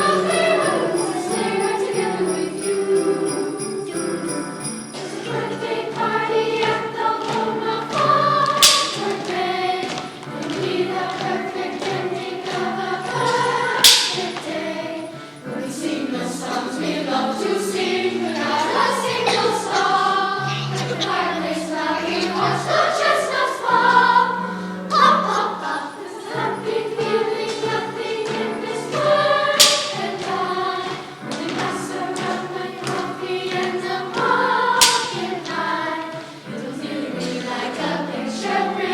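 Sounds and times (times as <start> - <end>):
youth choir singing: 0.0 - 38.9
sharp percussive hit: 8.6 - 9.2, 13.2 - 14.5, 29.5 - 30.3, 34.8 - 35.3.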